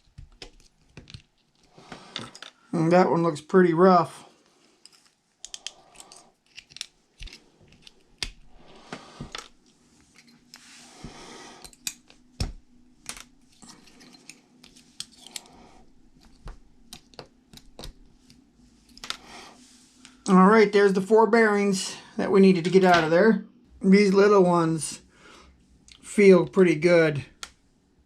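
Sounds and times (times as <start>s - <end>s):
soft scraping and rustling: 5.8s - 12.3s, 17.3s - 20.3s.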